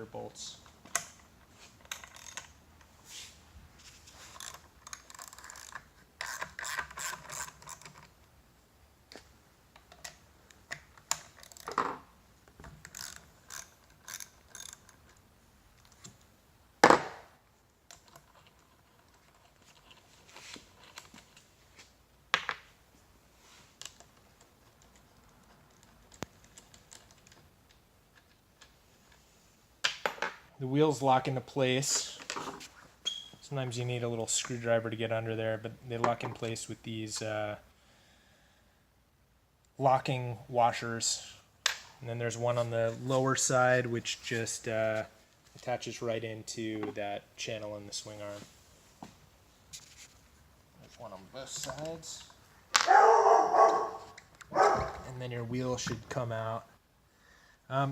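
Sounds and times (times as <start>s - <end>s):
socket ratchet clicking: 12.8s - 15.2s.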